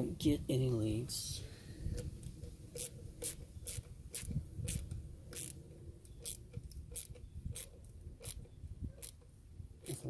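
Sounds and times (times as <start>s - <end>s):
ratchet clicking: 2.8s - 5.6s, 6.2s - 8.4s.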